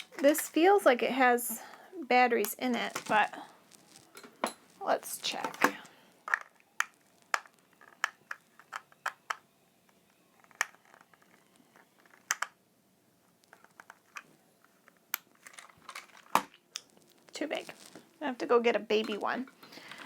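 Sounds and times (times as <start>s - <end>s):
plastic remote clicks and taps: 12.3s - 12.6s.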